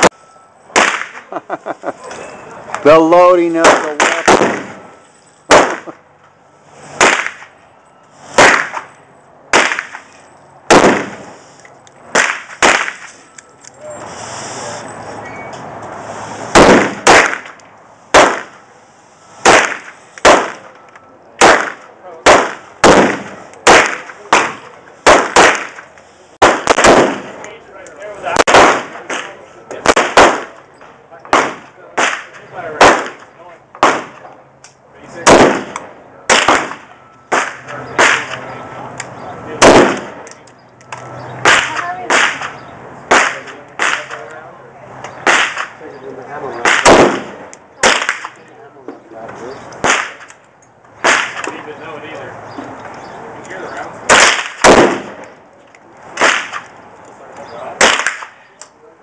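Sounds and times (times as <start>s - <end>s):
gunshots: 0.7s - 1.3s, 3.3s - 4.9s, 5.5s - 6.0s, 7.0s - 7.5s, 8.3s - 8.9s, 9.5s - 11.4s, 12.1s - 13.2s, 16.5s - 18.6s, 19.4s - 20.8s, 21.4s - 27.5s, 28.3s - 30.6s, 31.3s - 34.3s, 35.2s - 38.5s, 39.5s - 40.3s, 41.4s - 44.3s, 45.2s - 45.8s, 46.6s - 48.4s, 49.8s - 50.3s, 51.0s - 51.6s, 54.1s - 55.3s, 56.2s - 56.7s, 57.8s - 58.4s.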